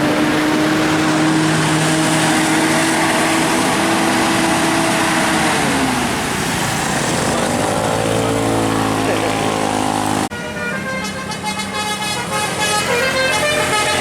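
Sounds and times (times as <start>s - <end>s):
musical air horn: 10.3s - 14.0s.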